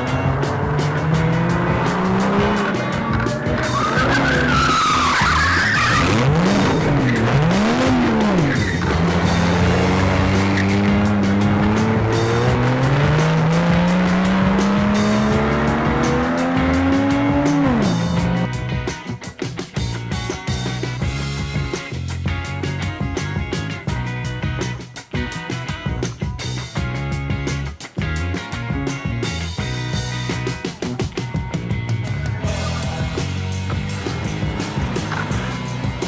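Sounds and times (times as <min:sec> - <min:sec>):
race car engine revving: 0:00.0 - 0:18.6, 0:32.4 - 0:36.0
tire squeal: 0:02.3 - 0:12.6, 0:32.5 - 0:36.0.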